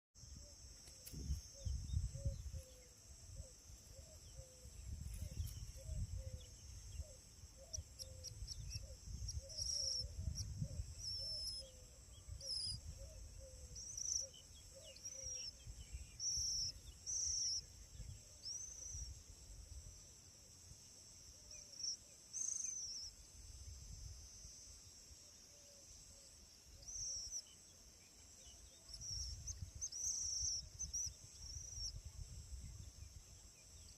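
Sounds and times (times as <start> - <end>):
insect drone: 0.2 - 33.9.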